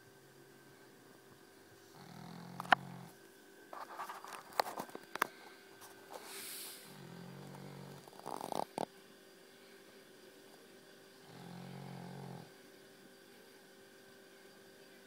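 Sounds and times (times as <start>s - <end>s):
breathy hiss: 1.6s - 3.2s, 5.1s - 10.2s, 11.2s - 12.6s
dog snoring: 1.9s - 3.2s, 6.9s - 8.9s, 11.2s - 12.5s.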